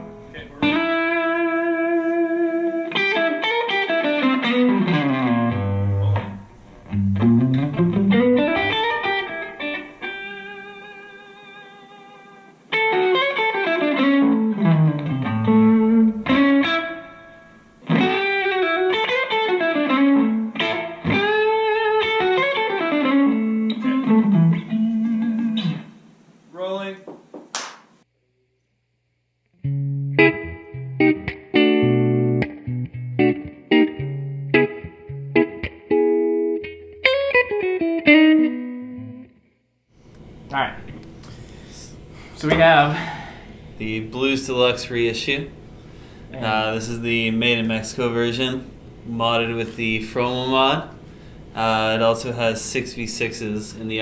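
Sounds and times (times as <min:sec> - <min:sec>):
electric guitar lead line: 0:00.0 - 0:26.0, 0:29.6 - 0:39.4.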